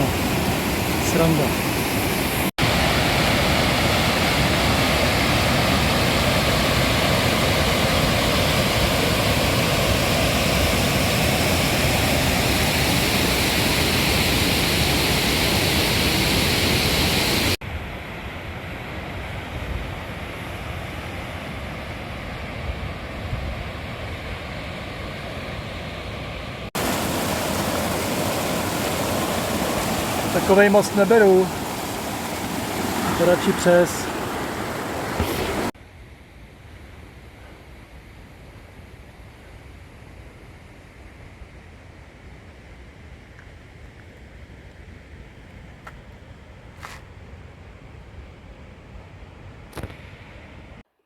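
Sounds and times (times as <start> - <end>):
mountain creek rushing: 0.0 - 17.6, 26.7 - 35.8.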